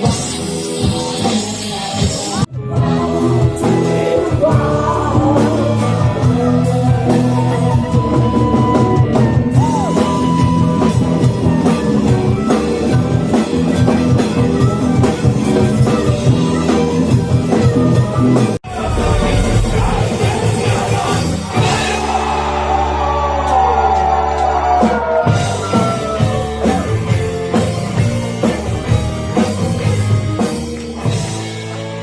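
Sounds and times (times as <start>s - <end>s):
rock band playing live: 0.0s - 32.0s
person singing: 0.7s - 8.5s, 18.7s - 23.0s.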